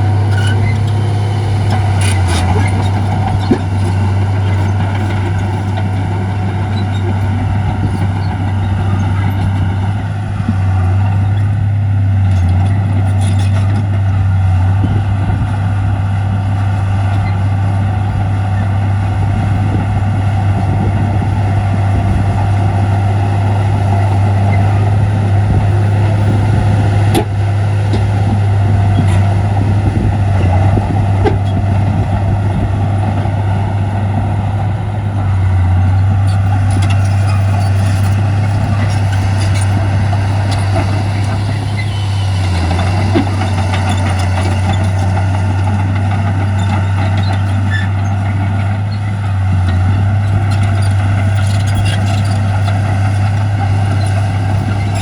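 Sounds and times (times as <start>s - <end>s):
diesel engine drone: 0.0s - 55.0s.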